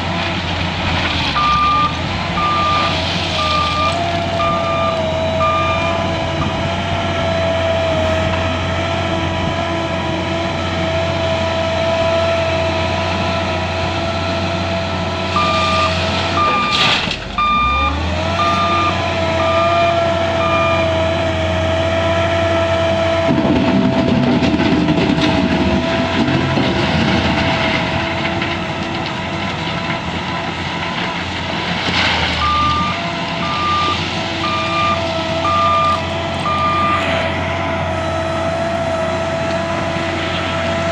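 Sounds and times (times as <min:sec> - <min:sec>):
diesel engine whining: 0:00.0 - 0:40.9
reversing alarm beeping: 0:01.4 - 0:07.8, 0:15.3 - 0:21.5, 0:32.4 - 0:38.9.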